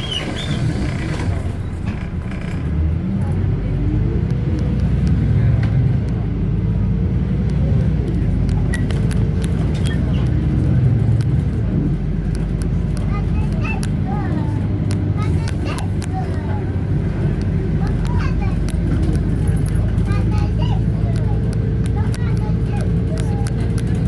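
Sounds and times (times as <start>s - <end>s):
bus engine and road rumble: 0.0s - 24.0s
light clicks and rattles: 12.2s - 24.0s.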